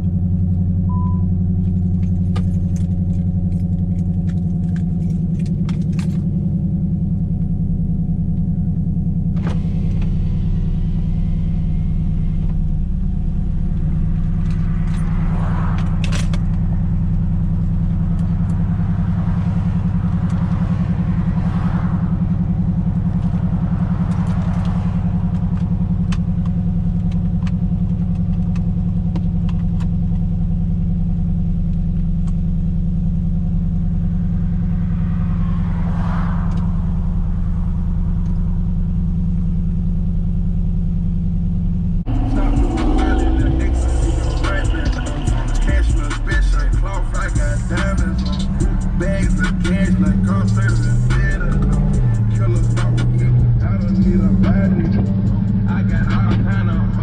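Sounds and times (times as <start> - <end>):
car engine idling: 0.0 - 57.0
short beeps: 0.9 - 1.4.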